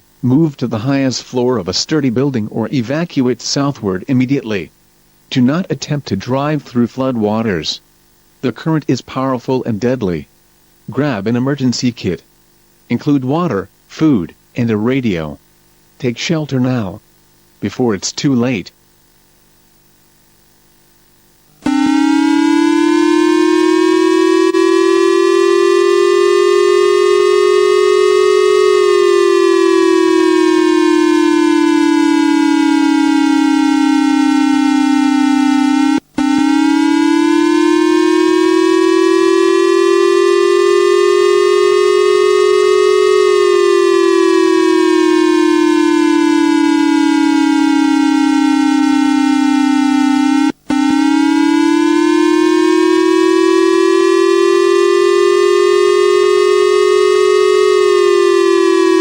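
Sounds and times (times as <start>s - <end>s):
wailing siren: 21.6s - 59.0s.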